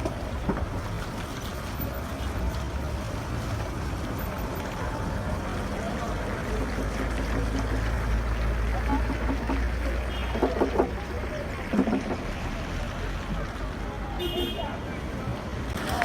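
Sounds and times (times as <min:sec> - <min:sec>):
faint voices: 0:00.0 - 0:16.0
low street rumble: 0:00.0 - 0:16.0.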